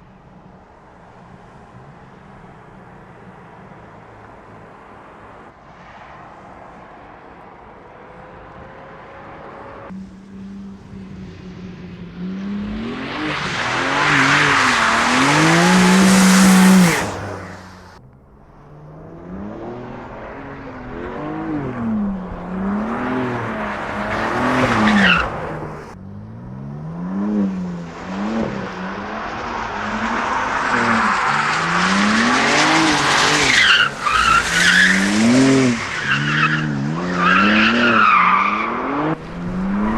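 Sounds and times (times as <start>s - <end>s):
car engine revving hard: 9.9s - 18.0s, 19.0s - 39.9s.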